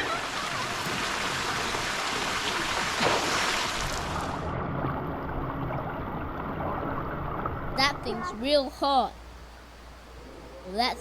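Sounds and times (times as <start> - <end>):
water rushing and splashing: 0.0 - 8.5.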